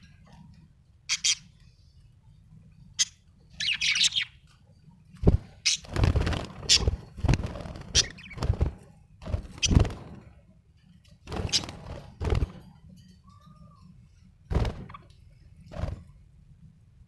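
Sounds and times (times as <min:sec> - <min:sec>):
budgerigar harsh chirps: 0:01.1 - 0:01.5.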